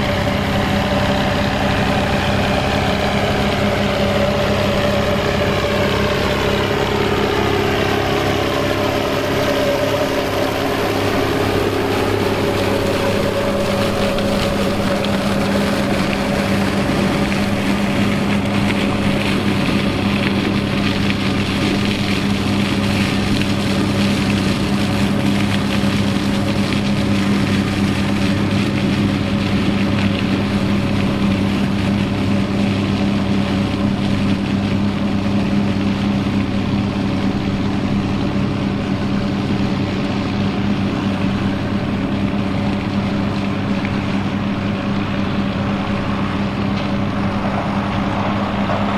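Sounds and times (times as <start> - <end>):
steady rushing noise: 0.0 - 48.9
tractor diesel engine running: 0.0 - 48.9.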